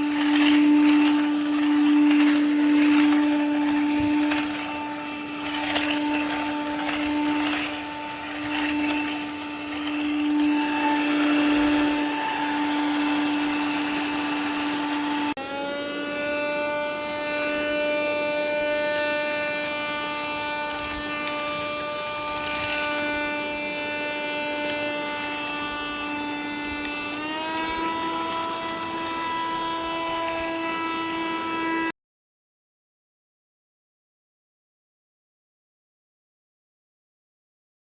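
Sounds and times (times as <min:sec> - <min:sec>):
vacuum suction rushing: 0:00.0 - 0:15.4
handheld vacuum motor whining: 0:00.0 - 0:31.9.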